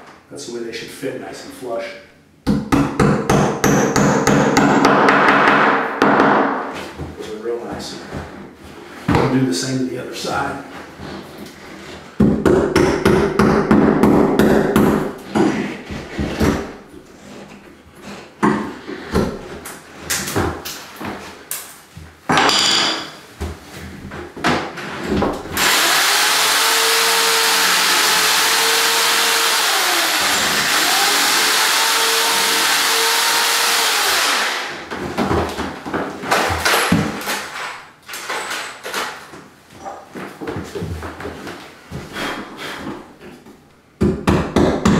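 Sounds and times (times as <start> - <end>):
power drill running: 25.6 - 34.8
knocks and clicks of hand work: 44.0 - 44.9.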